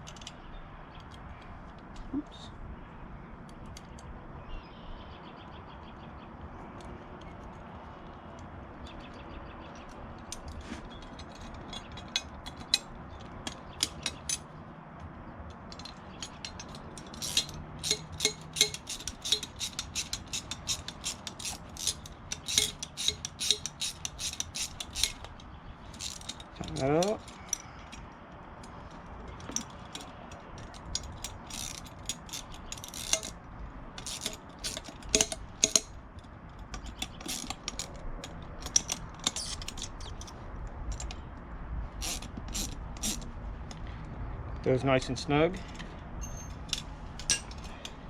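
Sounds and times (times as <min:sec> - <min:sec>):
socket ratchet clicking: 0:15.7 - 0:28.0, 0:28.6 - 0:33.4, 0:34.0 - 0:41.2, 0:42.0 - 0:43.3, 0:46.2 - 0:48.0.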